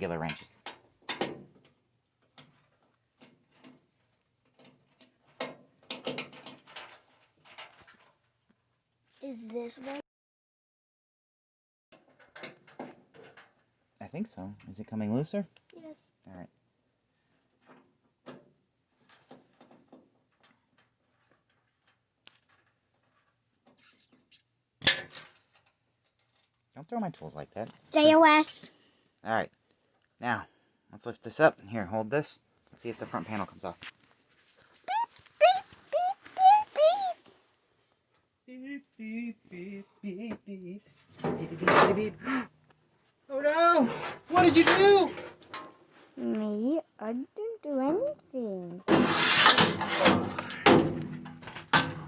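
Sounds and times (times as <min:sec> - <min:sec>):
hand tools clicking and knocking: 0:04.6 - 0:07.8, 0:43.8 - 0:45.7, 0:48.9 - 0:52.0
hand tools and screws clicking: 0:48.9 - 0:52.0.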